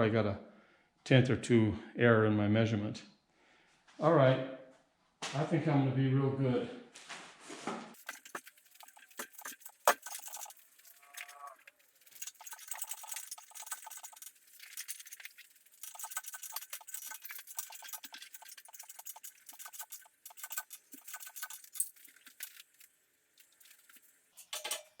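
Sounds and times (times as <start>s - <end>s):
small hard objects clinking: 8.0s - 25.0s.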